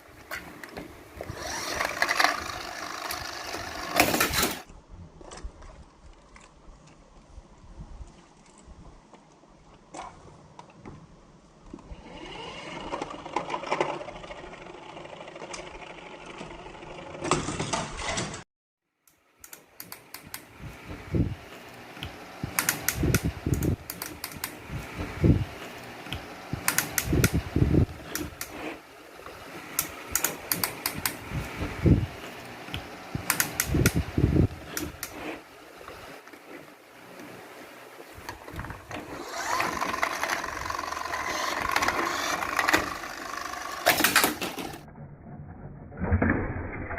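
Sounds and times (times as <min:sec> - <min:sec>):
toy cars rattling on track: 0:01.3 - 0:04.7, 0:12.2 - 0:18.4, 0:39.0 - 0:44.9
sharp clicks and knocks: 0:22.0 - 0:25.3, 0:26.1 - 0:27.5, 0:29.7 - 0:32.0, 0:32.7 - 0:35.2, 0:38.2 - 0:44.9.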